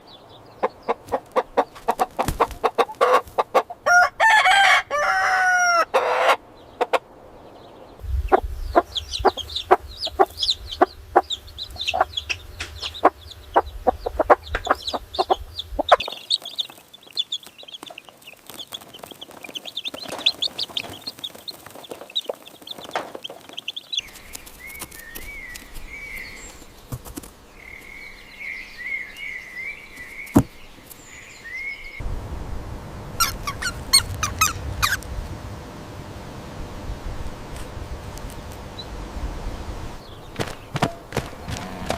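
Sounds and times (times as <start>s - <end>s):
small birds chirping: 0.0s - 3.9s, 5.8s - 41.9s
chickens clucking: 0.0s - 32.0s, 32.8s - 41.9s
rooster crowing: 3.8s - 6.4s, 33.0s - 35.2s.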